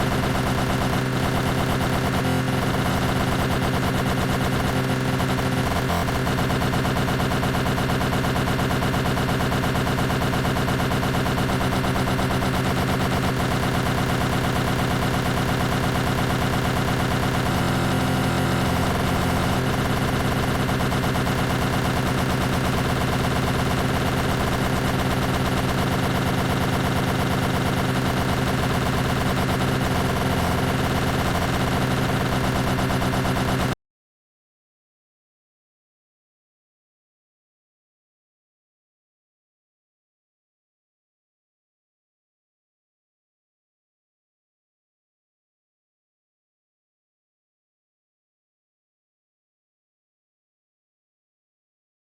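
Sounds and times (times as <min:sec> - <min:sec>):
lawn mower running: 0:00.0 - 0:33.8.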